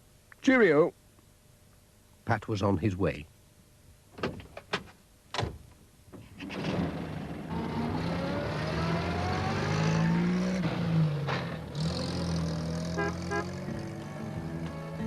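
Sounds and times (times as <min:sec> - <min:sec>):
van engine accelerating: 0:06.5 - 0:15.0.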